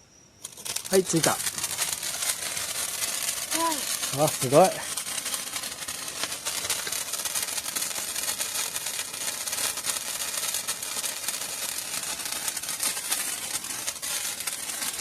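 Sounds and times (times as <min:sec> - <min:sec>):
firework hissing and crackling: 0:00.4 - 0:15.0.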